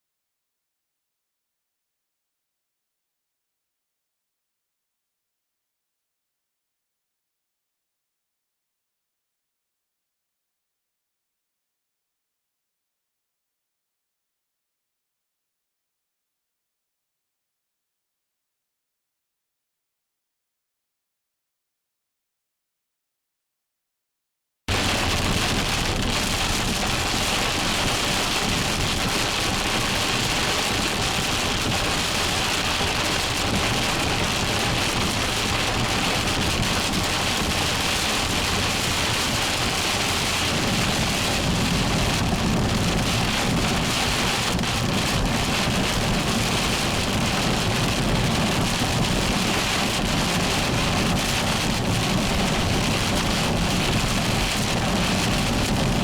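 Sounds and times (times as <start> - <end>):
heavy rain pouring: 24.7 - 56.0
thunder rumble: 24.7 - 56.0.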